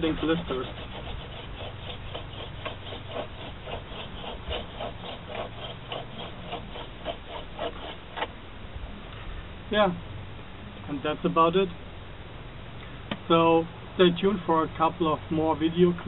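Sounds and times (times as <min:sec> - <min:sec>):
wooden spindle rasping on board: 0:00.0 - 0:08.3.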